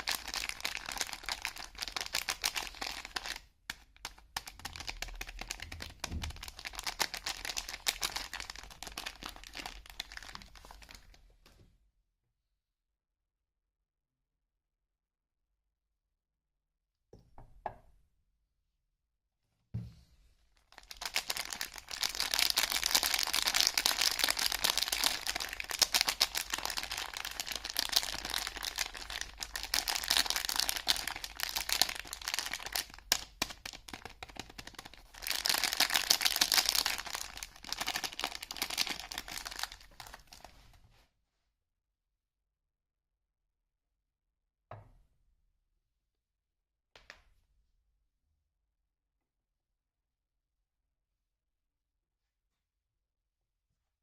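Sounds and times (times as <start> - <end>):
packaging tearing and crinkling: 0.0 - 11.1, 20.8 - 40.5.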